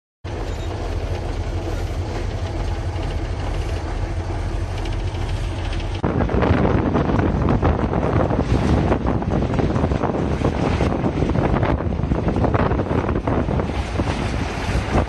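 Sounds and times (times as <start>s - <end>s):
diesel truck engine idling: 0.3s - 6.0s.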